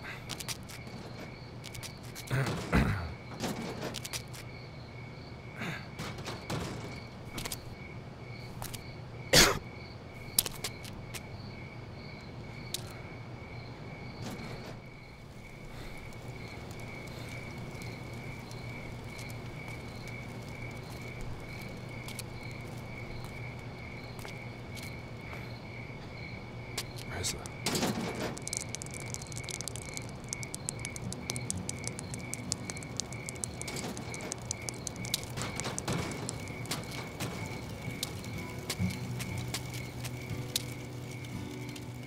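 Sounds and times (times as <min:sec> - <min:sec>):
crickets chirping: 0:00.0 - 0:42.0
clicks and knocks: 0:26.8 - 0:40.8.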